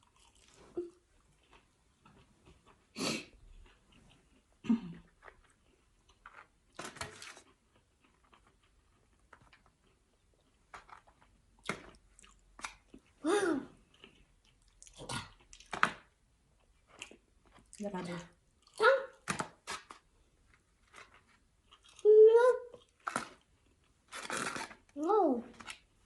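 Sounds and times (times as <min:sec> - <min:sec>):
chewing crispy food: 0:00.0 - 0:13.2, 0:13.8 - 0:26.0
loud crunches: 0:24.1 - 0:24.9.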